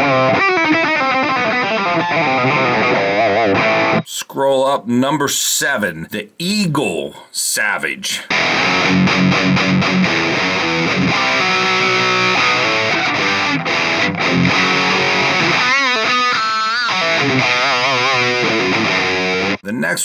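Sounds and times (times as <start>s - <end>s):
distorted electric guitar: 0.0s - 4.0s, 8.3s - 19.6s.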